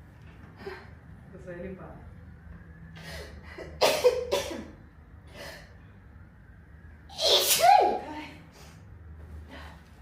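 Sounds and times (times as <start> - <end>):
girl sneezing: 7.1 - 8.0.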